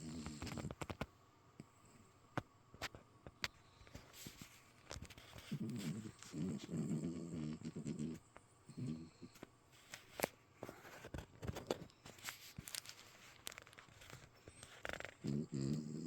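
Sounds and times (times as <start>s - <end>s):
dog snoring: 0.0s - 0.8s, 5.2s - 9.4s, 14.5s - 16.0s
faint clicks and ticks: 0.0s - 16.0s.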